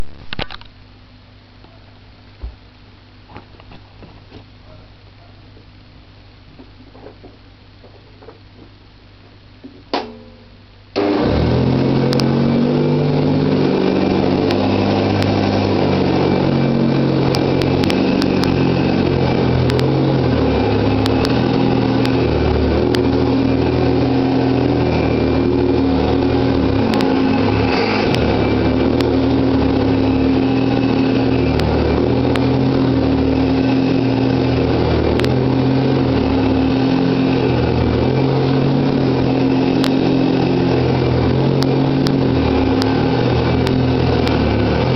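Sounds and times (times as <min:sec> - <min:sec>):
vacuum cleaner running: 0:10.9 - 0:44.9
dirt clicking in vacuum: 0:11.0 - 0:44.9.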